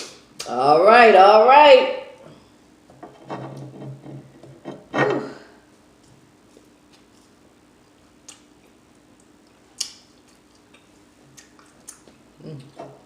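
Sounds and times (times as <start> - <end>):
faint steady hum: 0.0 - 13.0
wet chewing clicks: 7.9 - 12.8
lip smacks: 8.2 - 12.8.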